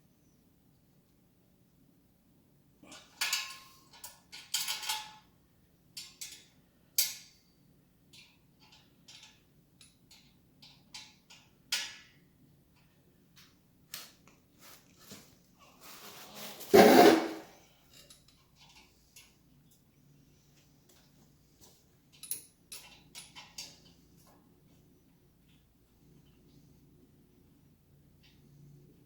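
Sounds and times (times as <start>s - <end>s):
metal tools clinking and rattling: 3.0s - 5.3s, 17.8s - 19.3s, 22.1s - 24.0s.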